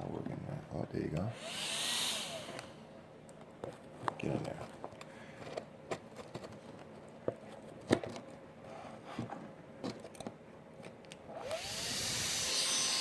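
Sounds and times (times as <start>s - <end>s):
small cooling fan whirring: 0.0s - 13.0s.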